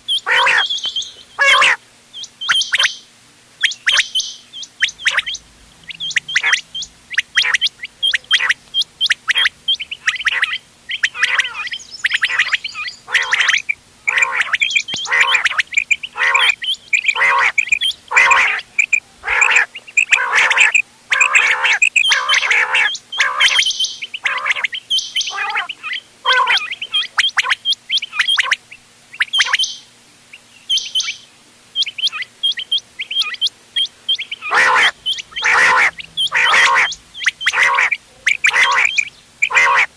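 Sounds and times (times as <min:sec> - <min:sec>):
quails calling: 0:00.0 - 0:39.9.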